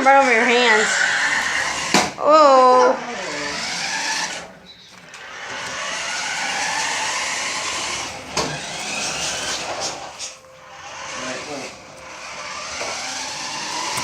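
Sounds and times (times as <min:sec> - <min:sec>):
toy car motor whirring: 0:00.0 - 0:04.5, 0:05.1 - 0:14.0.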